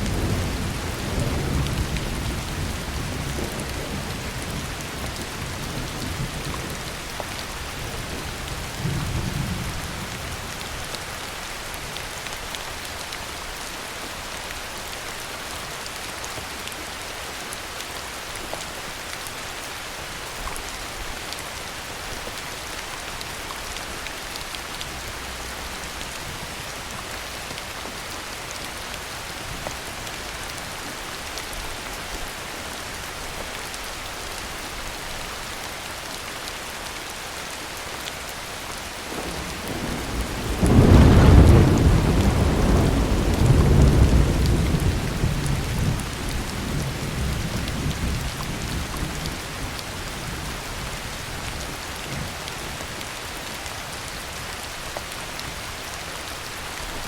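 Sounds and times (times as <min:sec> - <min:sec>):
low rumble of thunder: 0:00.0 - 0:10.6, 0:39.1 - 0:52.8
heavy rain falling: 0:00.0 - 0:57.0.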